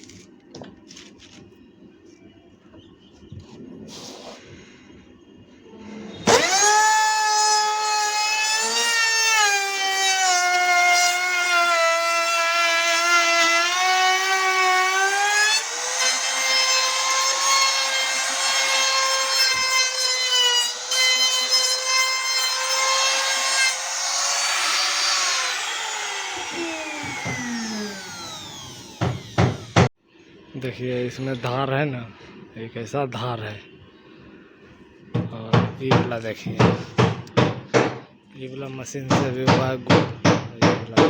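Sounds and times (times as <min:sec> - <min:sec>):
router motor whine: 0:06.2 - 0:11.4, 0:12.5 - 0:29.9.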